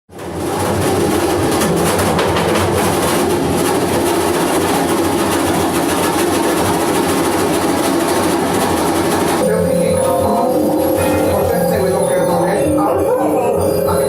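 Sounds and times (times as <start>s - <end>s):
low hum of pitched tones: 0.2s - 14.0s
live music noisy drone: 6.0s - 14.0s.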